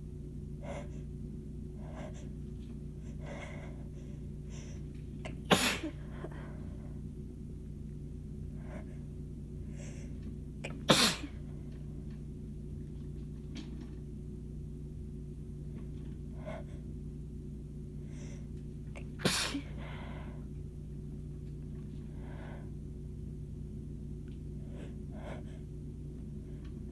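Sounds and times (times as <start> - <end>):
woman sneezing: 5.3 - 6.1, 10.7 - 11.4, 19.0 - 19.8.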